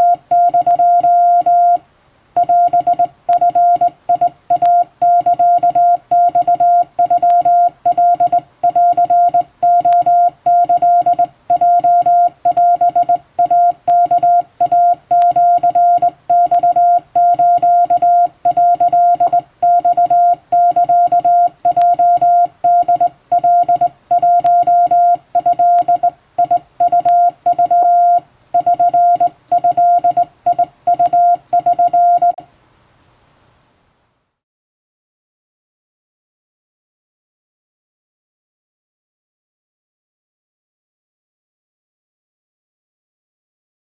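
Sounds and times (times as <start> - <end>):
hand-keyed morse code beeps: 0.0 - 1.8, 2.4 - 32.4.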